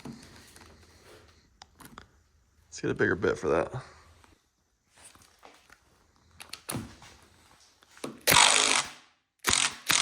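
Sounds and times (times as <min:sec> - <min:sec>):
drill rattling in bursts: 0:08.2 - 0:10.0.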